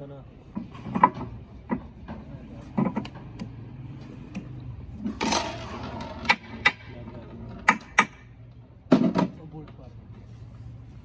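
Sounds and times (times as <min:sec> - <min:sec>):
metal tools clinking: 0:05.1 - 0:06.2.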